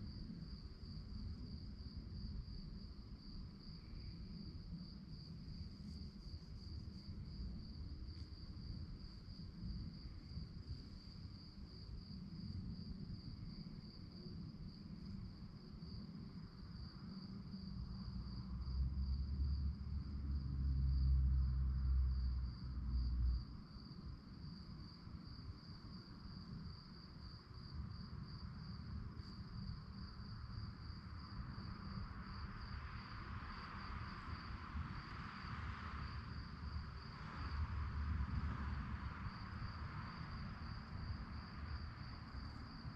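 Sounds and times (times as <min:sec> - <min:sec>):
crickets chirping: 0:00.0 - 0:42.9.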